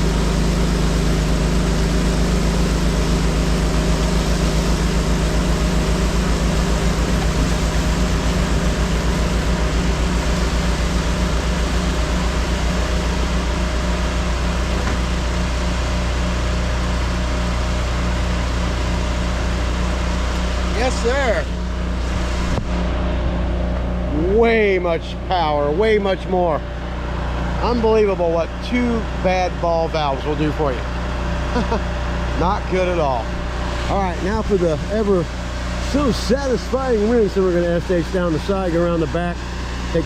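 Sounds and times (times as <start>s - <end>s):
high-pressure water spray hissing: 0.0s - 14.6s
pressure washer engine droning: 0.0s - 40.0s.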